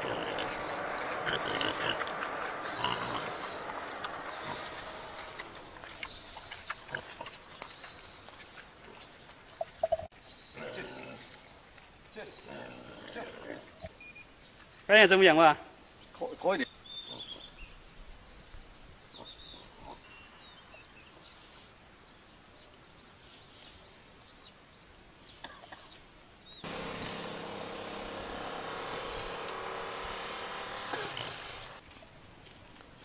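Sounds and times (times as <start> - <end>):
bird chirps: 4.3 - 7.1
loud steady droning tone: 26.7 - 31.8.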